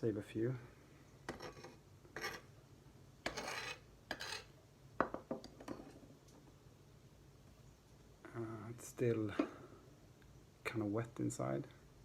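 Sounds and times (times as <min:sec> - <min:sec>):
knife scraping on hard surface: 0:01.3 - 0:02.5, 0:03.2 - 0:04.5.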